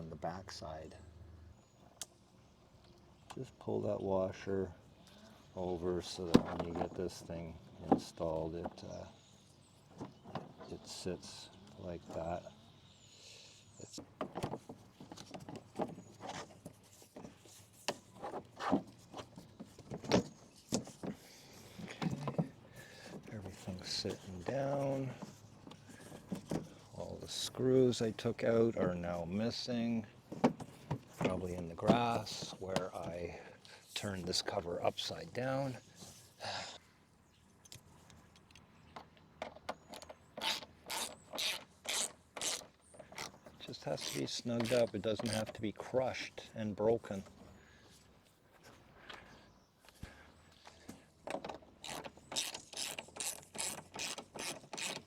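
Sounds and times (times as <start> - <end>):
mower parts clicking and scraping: 5.6 - 9.2, 13.9 - 36.4, 37.6 - 55.0
hand ratchet rasping strokes: 40.4 - 45.6, 51.8 - 55.0.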